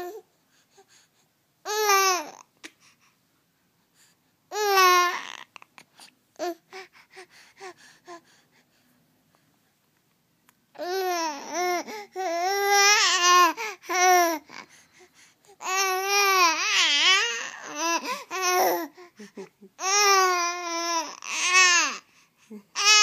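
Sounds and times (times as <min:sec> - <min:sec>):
infant babbling: 0:04.5 - 0:05.8, 0:15.6 - 0:22.0.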